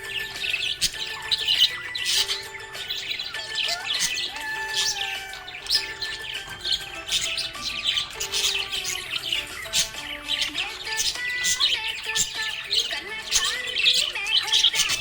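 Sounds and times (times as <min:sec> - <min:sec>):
background music with held notes: 0:00.0 - 0:15.0
budgerigars chirping: 0:00.0 - 0:15.0.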